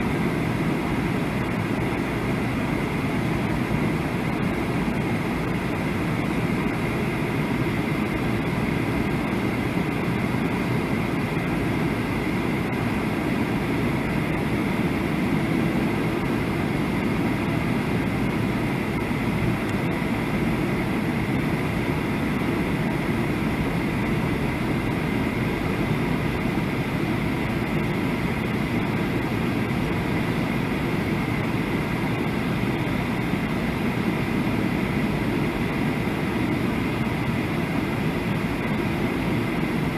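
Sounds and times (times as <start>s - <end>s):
airplane cabin low rumble: 0.0s - 39.9s.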